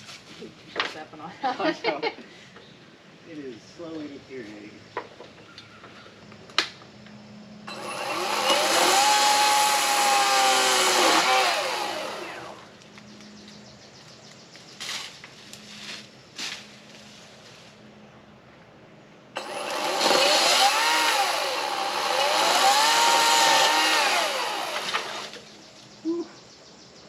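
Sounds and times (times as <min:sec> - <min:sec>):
power saw cutting branch: 0:07.7 - 0:12.7, 0:19.4 - 0:25.5.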